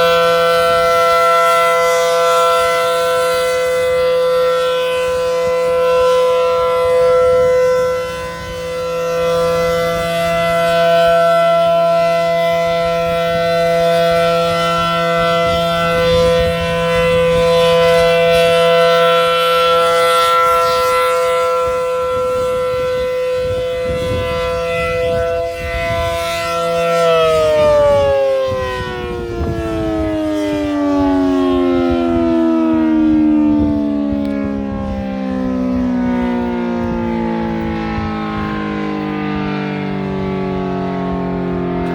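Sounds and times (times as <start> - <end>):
outdoor warning siren: 0.0 - 41.9.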